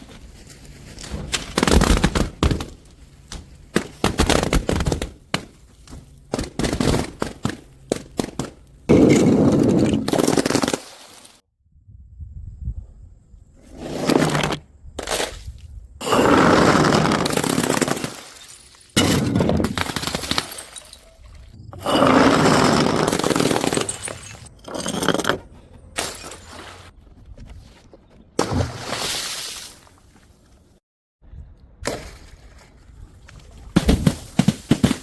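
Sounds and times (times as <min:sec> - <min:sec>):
glass bottles smashing: 0:16.0 - 0:25.4, 0:26.0 - 0:26.8.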